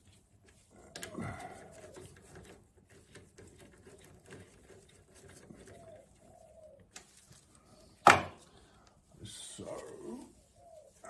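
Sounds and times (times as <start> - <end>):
faint clicks of parts and tools: 0.4 - 4.5.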